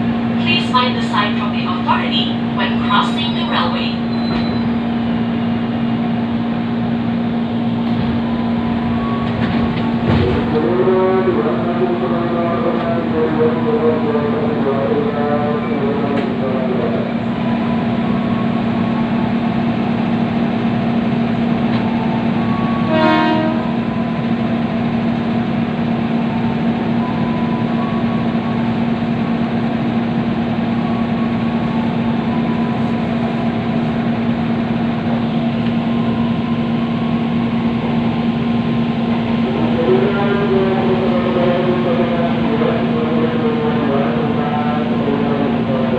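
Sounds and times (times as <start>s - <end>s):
train hum and rumble: 0.0s - 45.9s
train horn blast: 22.6s - 24.0s.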